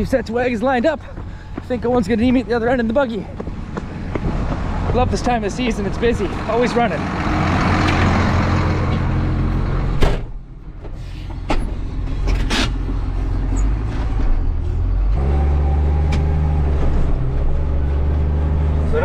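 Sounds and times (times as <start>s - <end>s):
sharp clunk: 10.0s - 10.4s.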